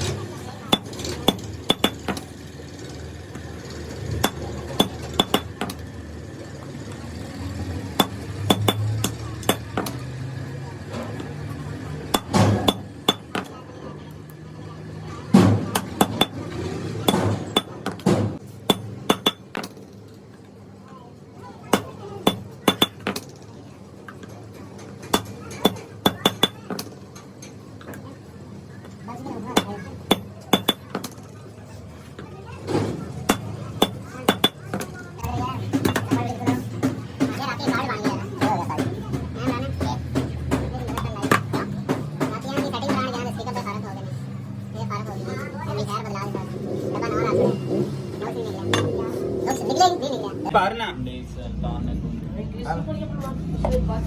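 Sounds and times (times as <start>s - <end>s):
hammer tapping on metal: 0.7s - 2.3s, 4.2s - 5.8s, 8.0s - 10.1s, 12.1s - 13.5s, 15.6s - 19.8s, 21.7s - 23.2s, 25.1s - 26.9s, 29.6s - 31.2s, 33.3s - 43.1s.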